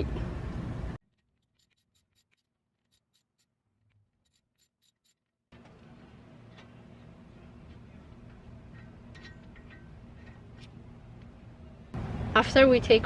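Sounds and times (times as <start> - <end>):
low steady hum: 5.6 - 13.0.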